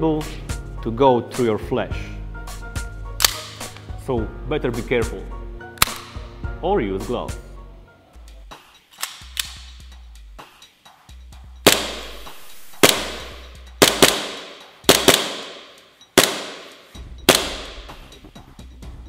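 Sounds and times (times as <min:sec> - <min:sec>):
background music: 0:00.0 - 0:19.0
airsoft gun shots with echo: 0:11.7 - 0:18.0.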